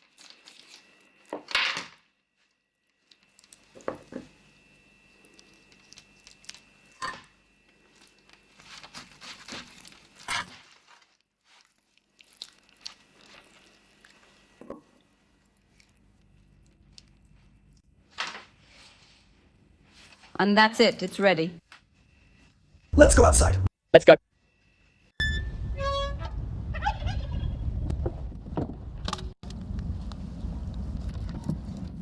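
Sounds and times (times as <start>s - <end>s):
hands and utensils mixing food: 0.0s - 1.4s, 3.0s - 17.8s
faint steady hum: 2.0s - 10.3s, 12.1s - 20.3s.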